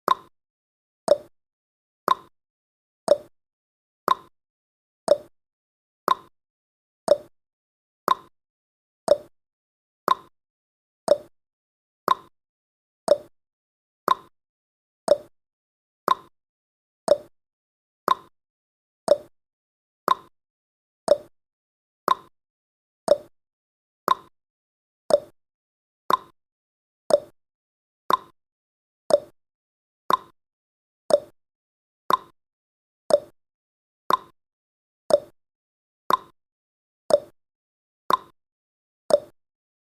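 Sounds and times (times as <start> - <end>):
clock ticking: 11.1 - 11.3, 13.1 - 13.3, 19.1 - 19.3, 21.1 - 21.3, 23.1 - 23.3, 35.1 - 35.3.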